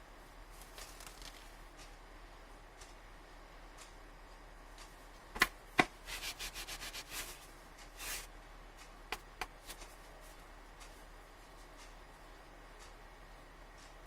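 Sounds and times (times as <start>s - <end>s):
rubbing and scraping of box: 6.1s - 8.3s.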